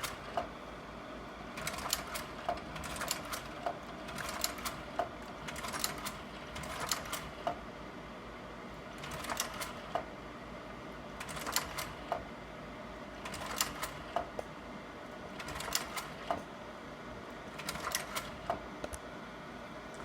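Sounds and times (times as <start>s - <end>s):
projector fan noise: 0.0s - 20.0s
slide projector mechanism clacking: 13.3s - 14.3s, 15.4s - 16.4s.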